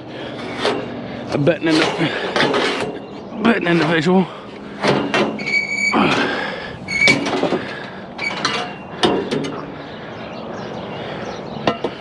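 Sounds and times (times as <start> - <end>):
scrap metal clanking and scraping: 0.2 - 9.7
metallic squeal: 5.0 - 7.4.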